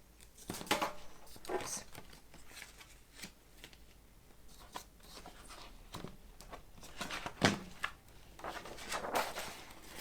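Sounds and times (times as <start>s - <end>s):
paper cards rustling: 4.6s - 10.0s.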